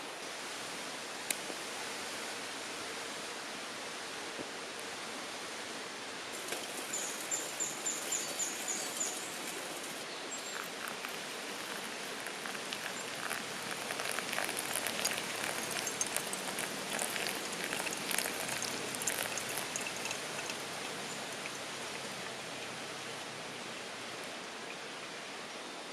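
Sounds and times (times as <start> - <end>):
stream rushing: 5.0 - 25.5.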